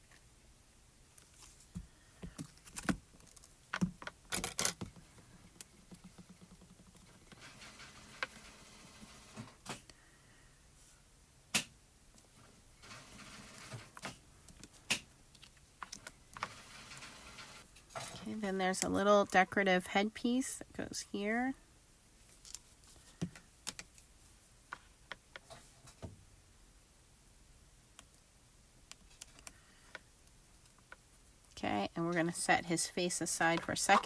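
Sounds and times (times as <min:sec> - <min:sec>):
craft tools tapping and clicking: 0:02.2 - 0:07.4.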